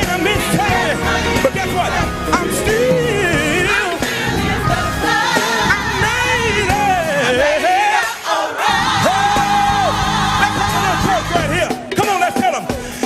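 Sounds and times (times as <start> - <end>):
sliding lead melody line: 0.0 - 7.6
live soul band playing: 0.0 - 7.9, 8.7 - 13.0.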